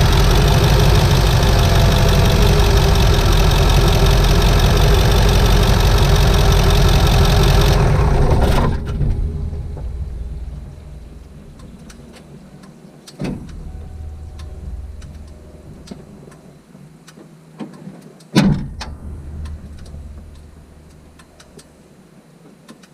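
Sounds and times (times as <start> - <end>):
diesel engine running down: 0.0 - 12.0, 13.5 - 16.2
faint small clicks: 22.6 - 22.9.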